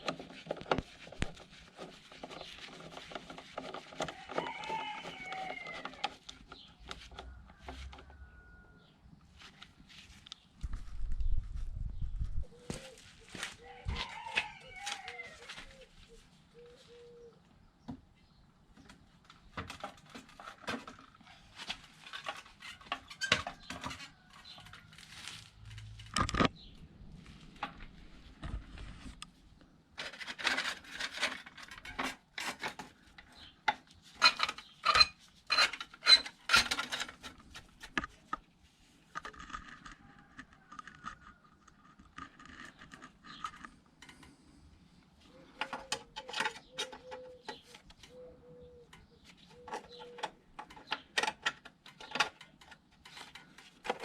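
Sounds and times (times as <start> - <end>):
metal tools clinking and knocking: 34.2 - 37.4, 45.5 - 47.6.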